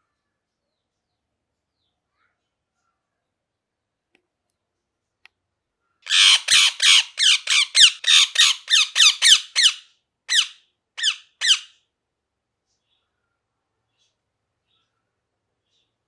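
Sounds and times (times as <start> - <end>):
parrot squawking: 6.1 - 11.7.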